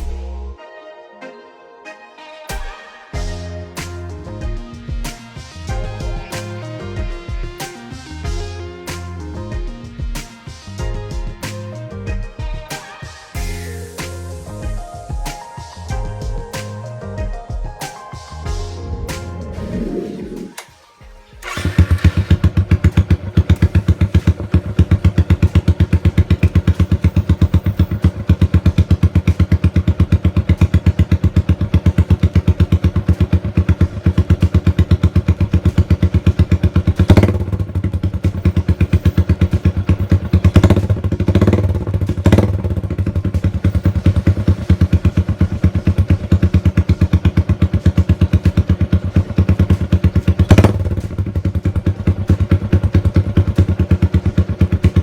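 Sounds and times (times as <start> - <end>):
motorcycle engine idling: 21.4 - 55.0.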